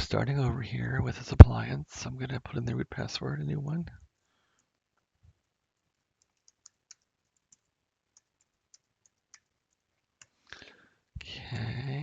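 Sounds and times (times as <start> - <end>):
typing on computer keyboard: 5.4 - 10.4.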